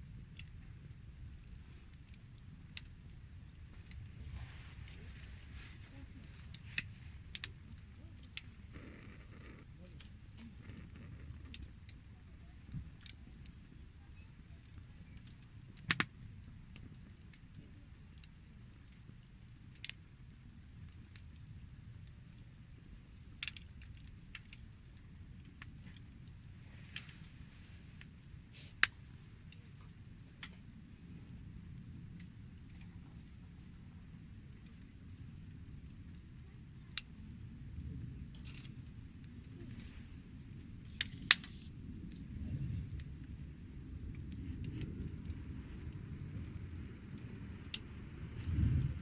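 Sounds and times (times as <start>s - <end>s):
campfire crackling: 0.0s - 49.0s
low rumble: 37.5s - 49.0s.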